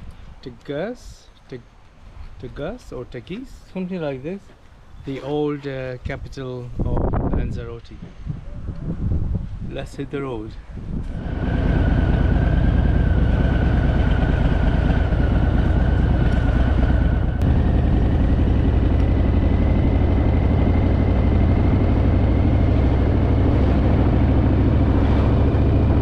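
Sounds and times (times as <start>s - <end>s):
thin whine: 11.0s - 26.0s
motorcycle engine running: 11.1s - 26.0s.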